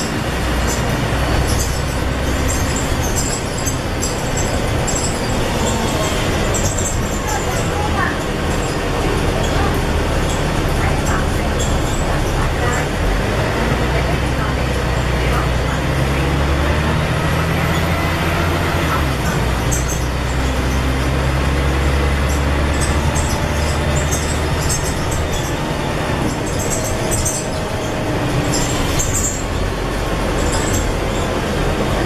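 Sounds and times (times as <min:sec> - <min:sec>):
bus diesel engine running: 0:00.0 - 0:32.0
bodywork rattling: 0:22.2 - 0:32.0.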